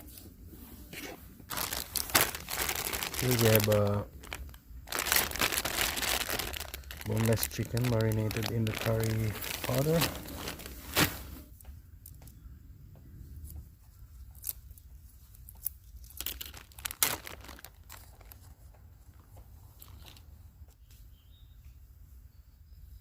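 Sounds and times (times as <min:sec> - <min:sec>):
plastic packaging crinkling and tearing: 0:01.5 - 0:11.5, 0:14.4 - 0:20.3.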